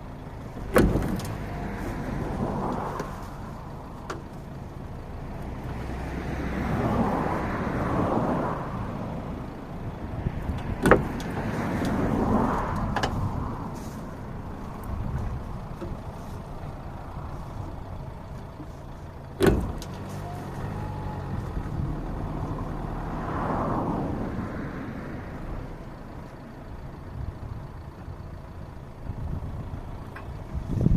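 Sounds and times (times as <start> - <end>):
van engine straining: 0.0 - 30.9.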